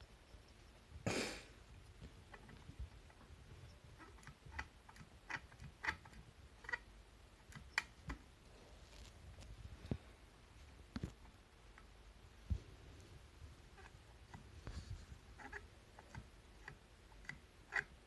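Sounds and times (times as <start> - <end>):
faint clicks and ticks: 1.8 - 8.4, 13.7 - 18.0.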